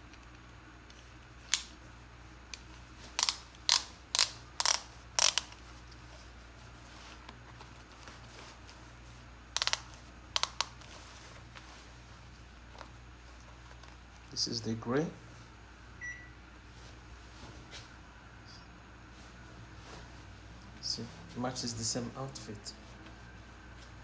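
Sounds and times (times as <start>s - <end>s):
ratchet belt buckle clicking: 2.5s - 5.6s, 9.6s - 10.8s.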